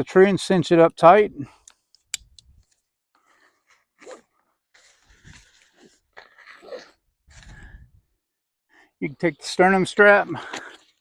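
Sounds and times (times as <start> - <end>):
webbing rustling and scraping: 1.8 - 7.8.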